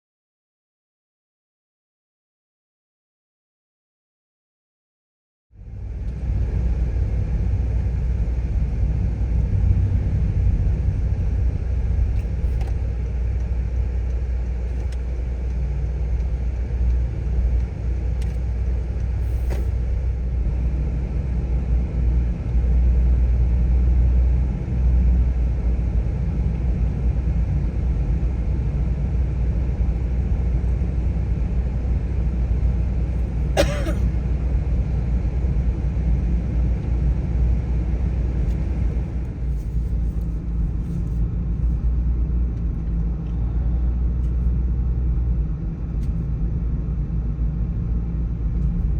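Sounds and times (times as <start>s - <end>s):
car driving on road: 5.6s - 48.9s.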